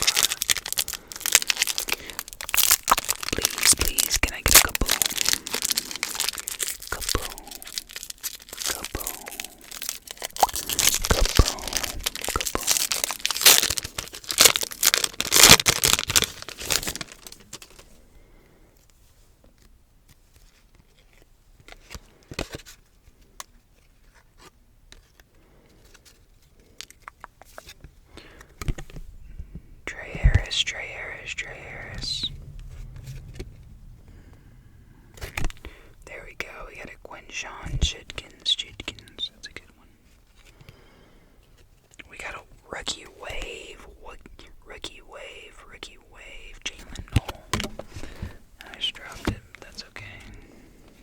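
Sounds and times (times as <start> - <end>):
plastic wrapper tearing and crinkling: 0.0 - 17.9.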